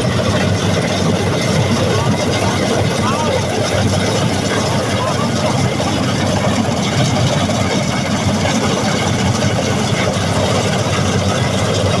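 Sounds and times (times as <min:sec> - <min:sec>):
combine harvester engine drone: 0:00.0 - 0:12.0.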